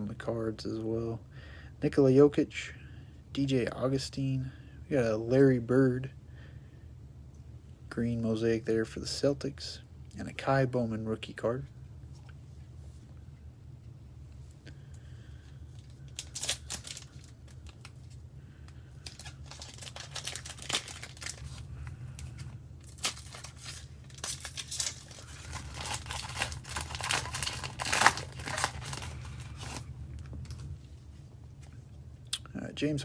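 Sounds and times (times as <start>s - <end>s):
steady low hum: 0.0s - 33.0s
foil wrapper tearing and crinkling: 15.8s - 18.2s, 19.0s - 30.7s.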